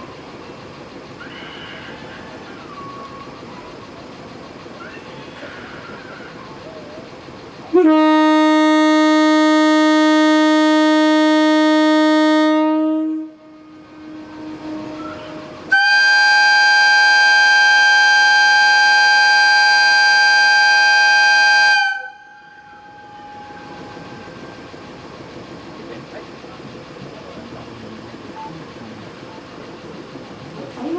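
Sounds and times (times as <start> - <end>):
higher bright train air horn: 7.7 - 25.1
low-pitched train air horn: 7.7 - 25.1.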